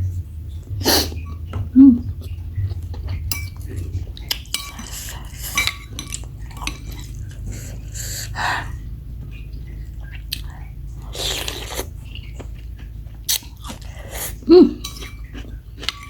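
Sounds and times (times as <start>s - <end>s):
slurping: 0.7s - 16.0s
spoon and fork clinking on bowl: 2.9s - 7.5s, 14.8s - 16.0s.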